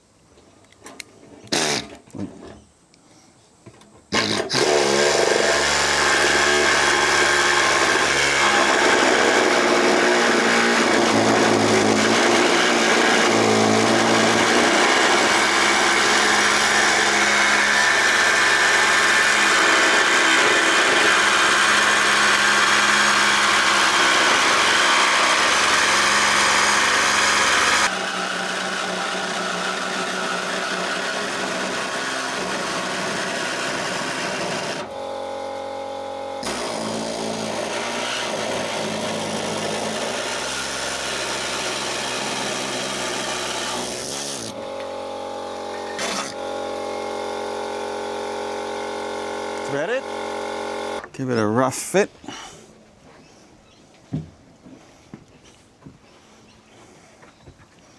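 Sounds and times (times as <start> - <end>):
air cutting tool cutting metal: 4.2 - 31.1, 45.5 - 51.0.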